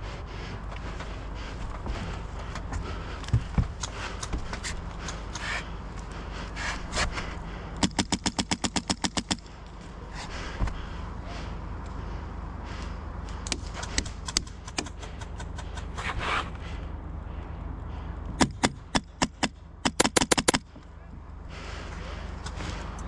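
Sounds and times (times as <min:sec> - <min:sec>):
airsoft rifle rapid shots: 0:07.8 - 0:09.5, 0:18.4 - 0:20.6.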